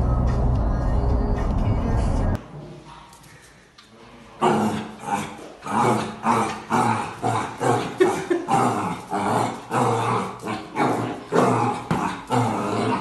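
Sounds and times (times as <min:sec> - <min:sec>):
dog growling: 0:04.4 - 0:13.0.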